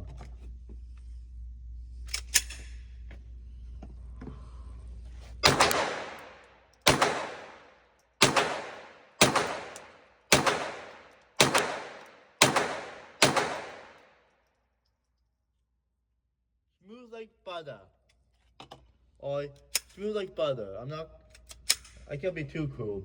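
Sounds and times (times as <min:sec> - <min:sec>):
gunshots with ringing tail: 0:05.4 - 0:14.0.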